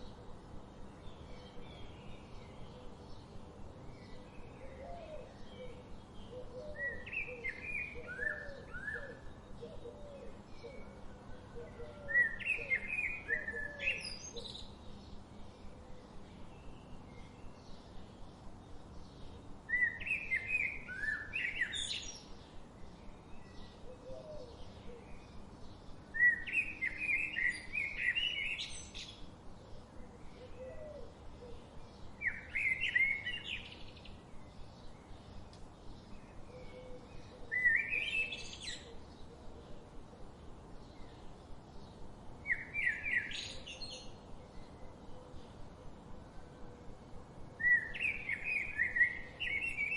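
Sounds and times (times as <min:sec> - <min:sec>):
background bird chatter: 0:00.0 - 0:49.9
low bird calls: 0:36.1 - 0:39.8.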